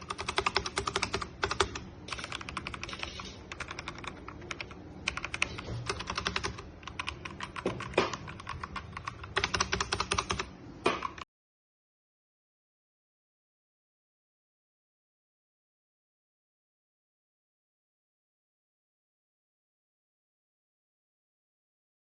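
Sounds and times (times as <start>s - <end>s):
mechanical keyboard typing: 0.0s - 11.2s.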